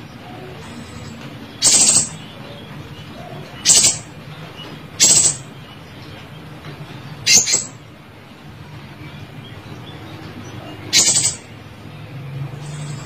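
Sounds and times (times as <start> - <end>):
bird high-pitched calls: 0.1 - 4.2, 5.0 - 6.3, 7.2 - 7.8, 10.5 - 11.6.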